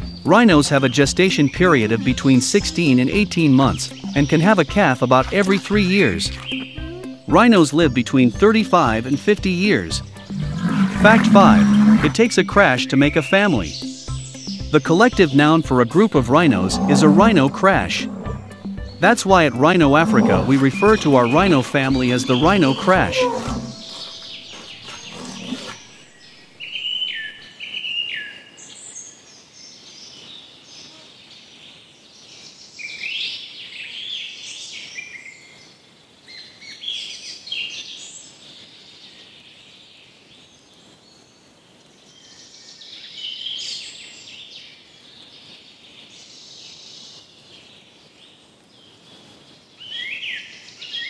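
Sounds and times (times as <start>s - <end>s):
birds chirping and whistling: 0.0s - 28.9s
faint outdoor hiss: 0.0s - 51.0s.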